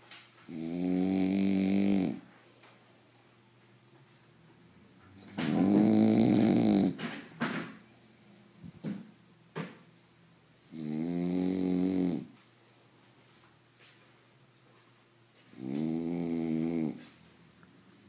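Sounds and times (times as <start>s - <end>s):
dog snorting: 0.4s - 2.2s, 5.2s - 7.2s, 10.7s - 12.4s, 15.4s - 17.1s
dog snoring: 0.4s - 2.3s, 5.1s - 7.1s, 10.6s - 12.4s, 15.4s - 17.1s.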